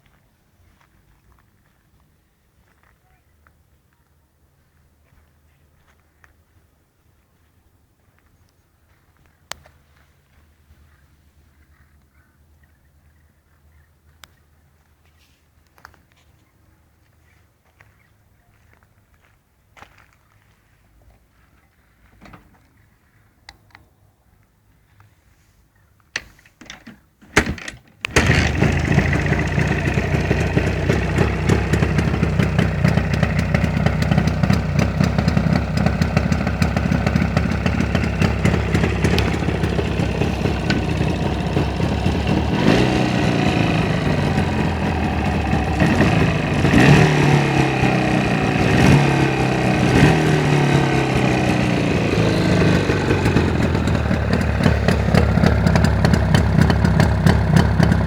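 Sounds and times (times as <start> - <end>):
motorcycle engine starting: 27.4 - 58.0
motorcycle engine idling and revving: 28.1 - 58.0.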